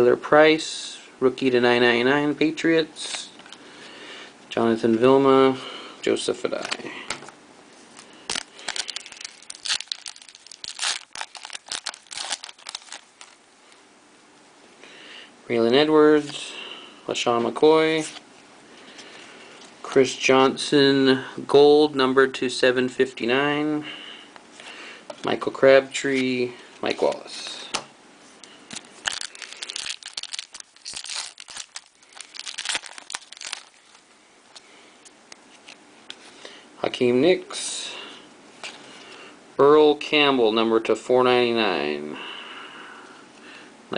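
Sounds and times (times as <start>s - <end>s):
foil wrapper crinkling and tearing: 8.3s - 13.4s, 28.7s - 34.0s.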